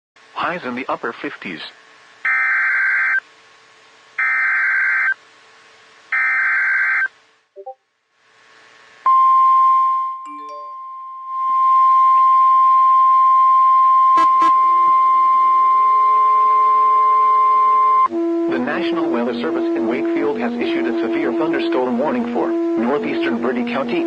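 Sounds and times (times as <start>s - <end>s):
screechy data bursts: 2.3s - 3.2s, 4.2s - 5.2s, 6.1s - 7.1s
steady alarm tone: 2.3s - 3.2s, 4.2s - 5.2s, 6.1s - 7.1s, 9.1s - 24.0s.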